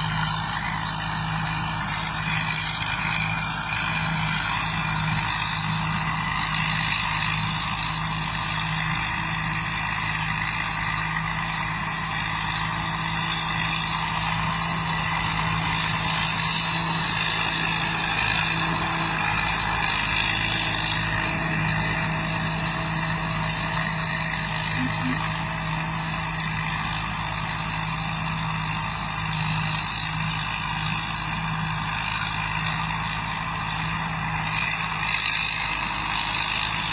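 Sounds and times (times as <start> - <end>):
combine harvester engine running: 0.0 - 36.9
constant high whine: 0.0 - 36.9.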